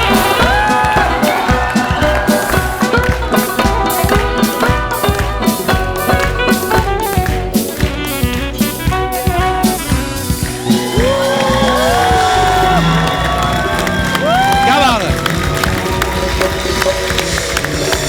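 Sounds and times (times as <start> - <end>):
sarod with sliding notes: 0.0 - 11.6
drum accompaniment: 0.0 - 18.0.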